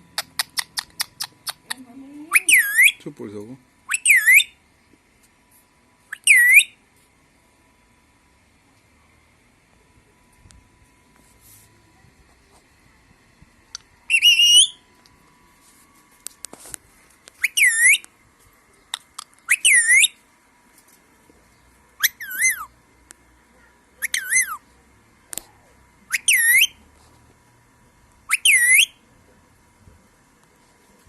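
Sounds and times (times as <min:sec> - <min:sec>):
parrot whistled calls: 0:02.3 - 0:03.0, 0:03.9 - 0:04.6, 0:06.1 - 0:06.8, 0:14.1 - 0:14.8, 0:17.4 - 0:18.0, 0:19.5 - 0:20.2, 0:22.0 - 0:22.7, 0:24.0 - 0:24.6, 0:26.1 - 0:26.8, 0:28.3 - 0:29.0.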